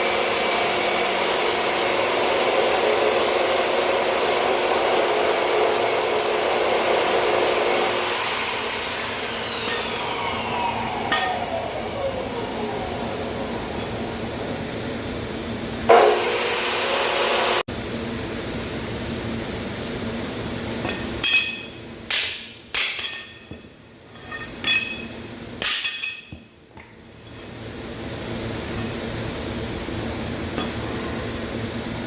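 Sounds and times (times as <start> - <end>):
hiss with rising whistle: 0.0 - 17.6
hammer striking steel: 11.1 - 11.5, 20.8 - 26.5.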